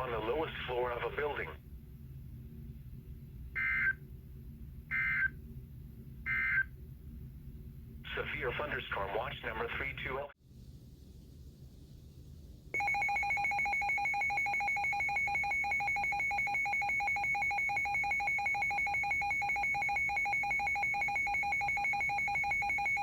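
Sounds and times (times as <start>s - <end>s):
pulsing two-tone alert alarm: 3.6s - 4.0s, 4.9s - 5.3s, 6.3s - 6.7s, 12.8s - 23.0s.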